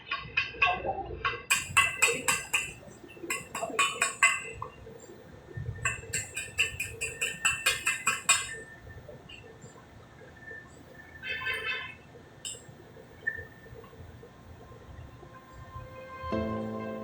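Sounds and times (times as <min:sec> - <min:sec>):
light metal-on-metal taps: 0:01.5 - 0:04.8, 0:05.8 - 0:08.8, 0:12.4 - 0:12.7.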